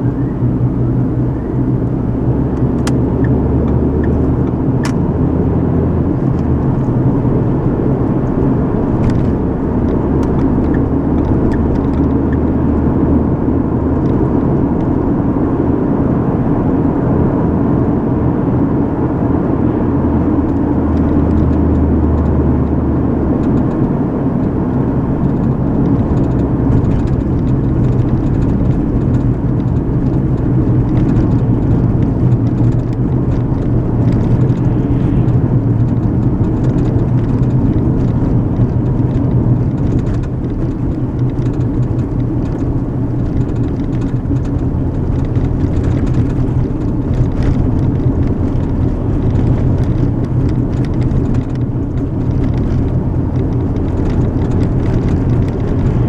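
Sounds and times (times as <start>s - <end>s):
engine drone: 0.0s - 56.0s
light ticks and rattles: 23.4s - 56.0s
tyre rumble: 25.4s - 56.0s.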